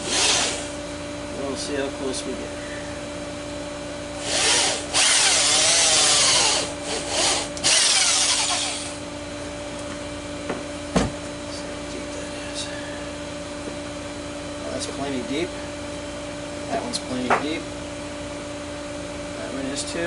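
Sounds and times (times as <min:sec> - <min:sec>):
electric drill boring into wood: 0:00.0 - 0:00.8, 0:04.2 - 0:09.0
faint steady hum: 0:00.0 - 0:20.0.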